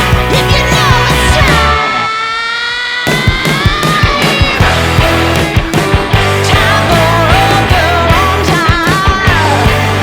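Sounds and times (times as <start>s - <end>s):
steady drum beat: 0.0s - 1.8s, 3.1s - 10.0s
distorted guitar: 0.0s - 10.0s
rock music: 0.0s - 10.0s.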